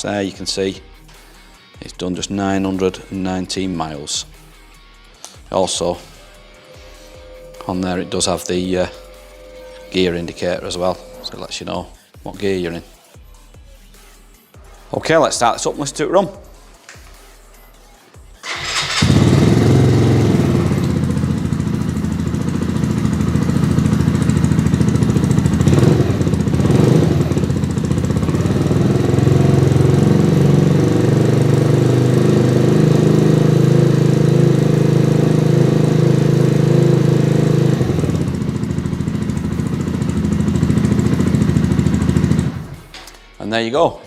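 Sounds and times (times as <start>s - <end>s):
motorcycle engine idling: 6.2s - 11.4s, 18.4s - 42.9s
electric starter cranking: 18.4s - 21.6s.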